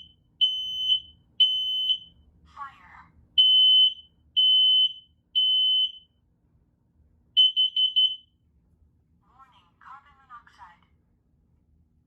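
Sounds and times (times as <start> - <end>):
smoke alarm beeping: 0.0 - 2.2, 3.4 - 6.1, 7.4 - 8.3.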